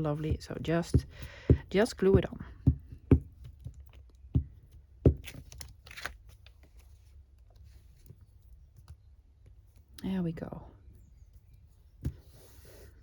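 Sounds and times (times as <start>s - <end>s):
paper rustling: 5.2s - 8.1s.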